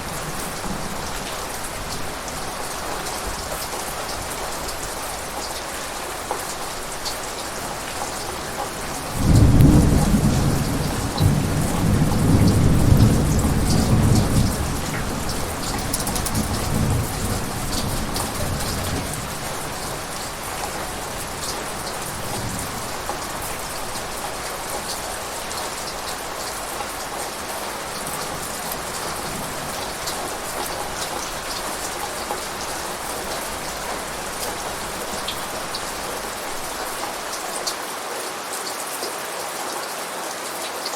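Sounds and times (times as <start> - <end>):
heavy rain: 0.0 - 40.9
thunder rumbling: 7.6 - 37.0.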